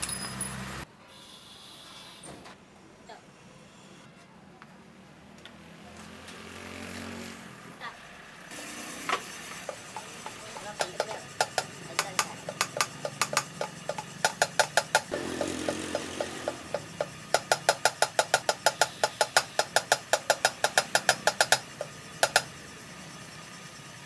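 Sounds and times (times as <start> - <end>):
hammer striking metal: 8.8 - 22.6.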